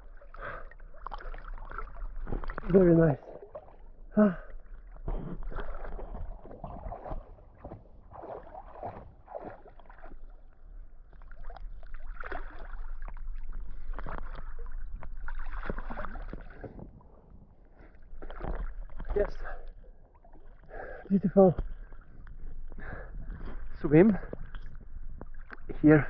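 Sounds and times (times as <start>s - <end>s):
water splashing around swimmer: 0.0s - 17.2s.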